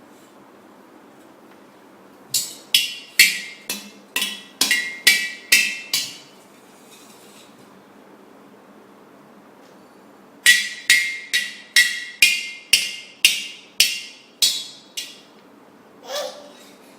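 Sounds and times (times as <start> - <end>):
sharp ringing knocks: 10.4 - 15.3.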